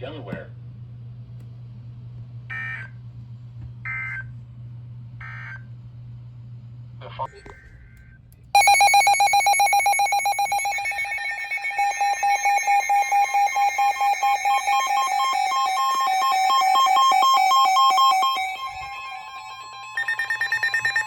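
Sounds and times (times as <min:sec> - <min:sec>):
shrill alarm beeping: 0:08.6 - 0:21.0.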